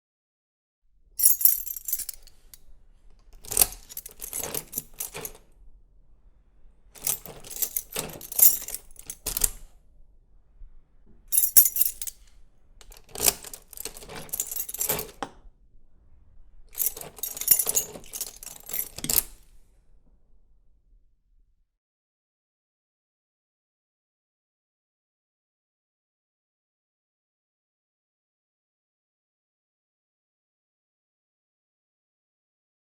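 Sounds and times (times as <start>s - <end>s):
key clicking in door lock: 3.3s - 5.4s, 7.0s - 9.7s, 11.4s - 12.1s, 12.8s - 15.3s, 16.8s - 19.4s.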